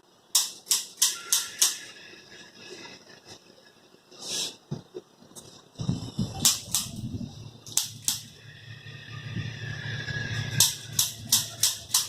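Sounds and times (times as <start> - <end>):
spring-loaded instrument clicking: 0.3 - 1.8, 10.6 - 12.0.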